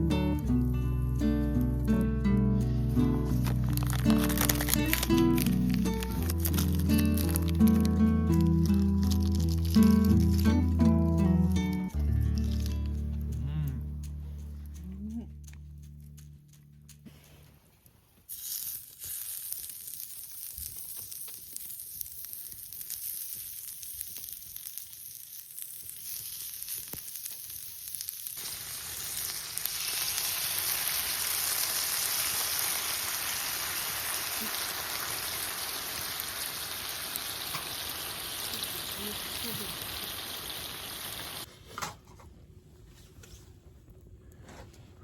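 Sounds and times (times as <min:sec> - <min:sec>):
food sizzling in a hot pan: 0:03.4 - 0:10.7, 0:18.3 - 0:41.5.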